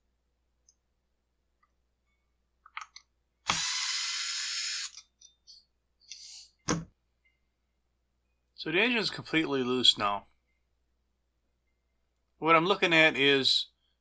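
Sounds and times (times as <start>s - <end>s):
power screwdriver running: 3.5s - 5.0s.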